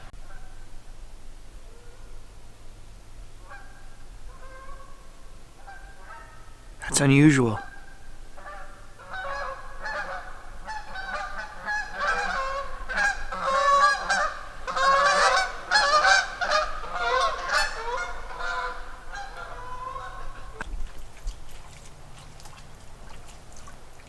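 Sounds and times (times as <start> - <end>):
geese honking: 5.6 - 6.6, 7.6 - 20.6.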